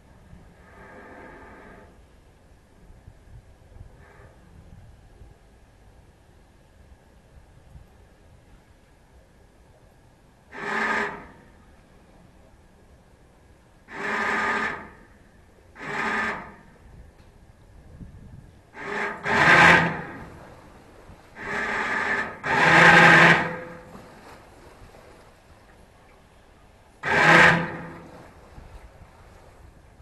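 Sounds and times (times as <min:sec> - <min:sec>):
electric thruster motor buzzing: 0:13.9 - 0:15.0, 0:18.8 - 0:20.4, 0:21.4 - 0:23.8, 0:27.0 - 0:28.1.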